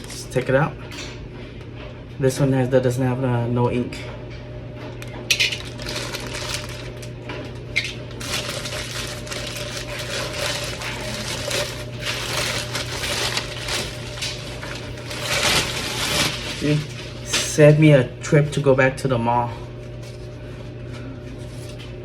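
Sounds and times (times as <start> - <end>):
steady low hum: 0.0 - 22.0
plastic scraping and crackling: 5.3 - 17.4.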